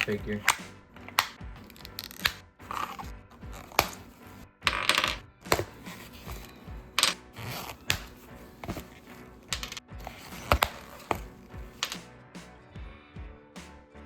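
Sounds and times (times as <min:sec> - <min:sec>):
plastic toy parts clicking: 0:01.2 - 0:03.0
rustling scrape: 0:05.5 - 0:06.7.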